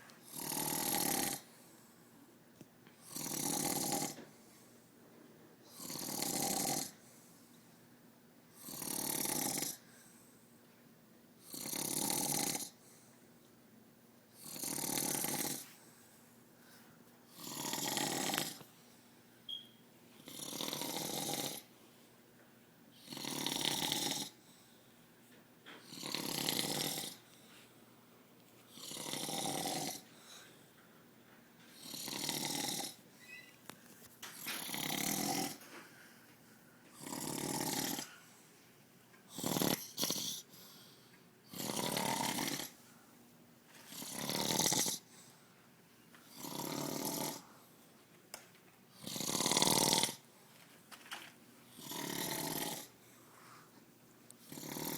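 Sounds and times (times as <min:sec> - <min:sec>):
quiet breathing: 0:00.0 - 0:02.4, 0:03.0 - 0:10.8, 0:12.6 - 0:13.6, 0:14.4 - 0:19.6, 0:24.3 - 0:48.0, 0:51.6 - 0:54.9
man snoring: 0:00.3 - 0:01.5, 0:03.0 - 0:04.2, 0:05.7 - 0:07.0, 0:08.6 - 0:09.8, 0:11.5 - 0:12.8, 0:14.4 - 0:15.7, 0:17.4 - 0:18.6, 0:20.3 - 0:21.7, 0:23.0 - 0:24.4, 0:25.9 - 0:27.2, 0:28.7 - 0:30.1, 0:31.8 - 0:33.0, 0:34.4 - 0:35.6, 0:37.0 - 0:38.1, 0:39.3 - 0:40.5, 0:41.5 - 0:42.8, 0:43.9 - 0:45.1, 0:46.3 - 0:47.5, 0:49.0 - 0:50.2, 0:51.8 - 0:53.0, 0:54.5 - 0:54.9.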